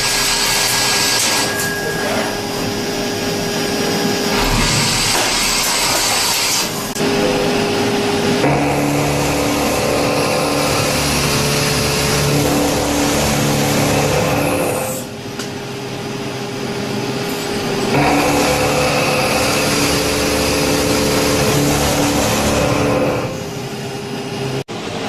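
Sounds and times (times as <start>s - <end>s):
cnc machine cutting: 0.0s - 15.2s, 17.2s - 24.6s
steady machine hum: 0.0s - 25.0s.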